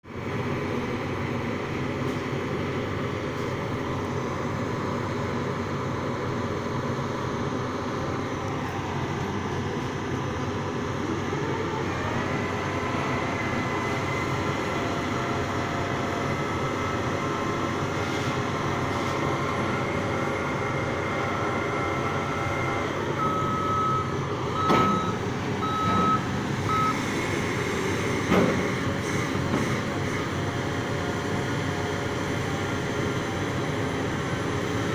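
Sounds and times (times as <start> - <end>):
diesel engine running: 0.1 - 34.9
short warning beeps: 23.2 - 27.0.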